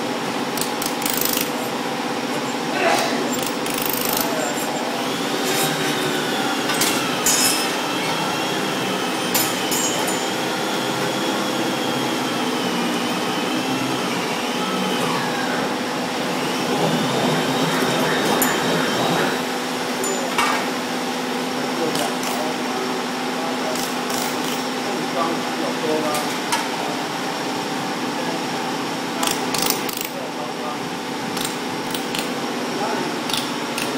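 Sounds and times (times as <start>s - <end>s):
welding machine hiss and hum: 0.0s - 14.0s, 20.8s - 26.0s.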